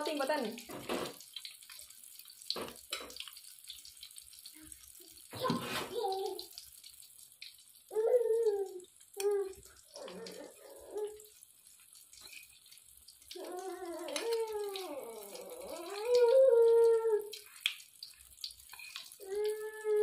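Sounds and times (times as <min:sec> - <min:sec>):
bread sizzling in oil: 0:00.0 - 0:20.0
child's high voice calling: 0:05.4 - 0:06.5.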